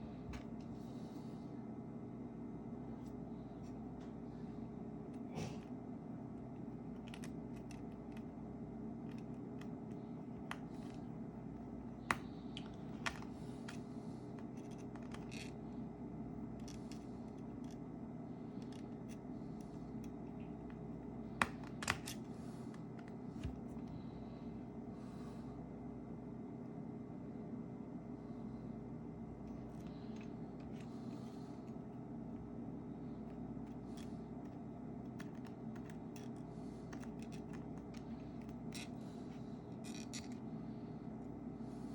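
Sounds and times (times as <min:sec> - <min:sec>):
steady low hum: 0:00.0 - 0:41.9
small tools clicking and scraping: 0:07.0 - 0:08.2, 0:14.4 - 0:15.6, 0:33.7 - 0:40.4.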